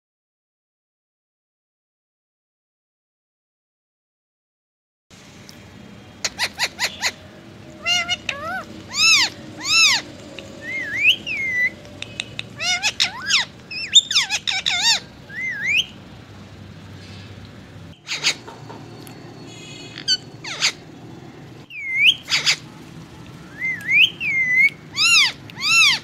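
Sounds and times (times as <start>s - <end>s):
parakeet clicks and whistled calls: 7.8s - 16.0s, 21.7s - 26.0s.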